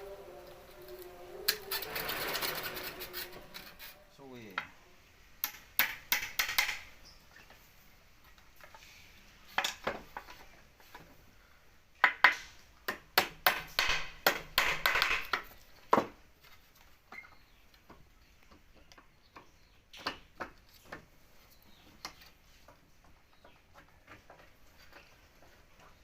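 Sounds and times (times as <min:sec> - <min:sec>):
scraping: 0:00.0 - 0:04.2
wood and tools knocking: 0:05.4 - 0:07.6, 0:09.5 - 0:11.2, 0:12.0 - 0:26.0.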